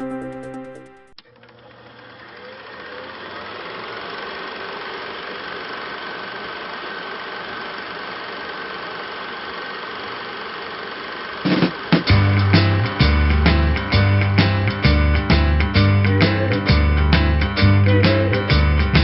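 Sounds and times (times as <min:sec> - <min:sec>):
music: 0:00.0 - 0:01.2, 0:12.0 - 0:19.0
steady mechanical running noise: 0:01.2 - 0:12.4.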